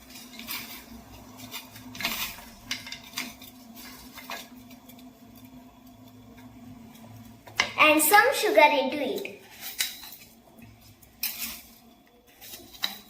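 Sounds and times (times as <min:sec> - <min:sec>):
utensils clinking on dishes: 0:01.4 - 0:05.0, 0:09.4 - 0:10.4, 0:11.2 - 0:13.0.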